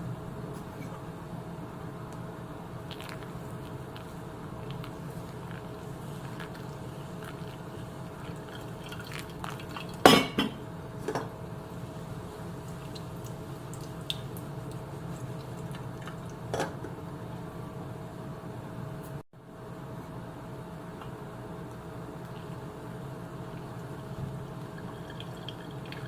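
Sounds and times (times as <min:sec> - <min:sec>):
steady background hum: 0:00.0 - 0:26.0
dishes and utensils clinking: 0:10.1 - 0:11.3.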